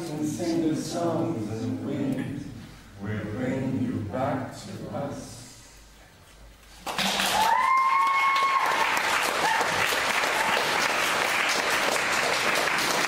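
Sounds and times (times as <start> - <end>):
audience applauding: 6.8 - 13.0.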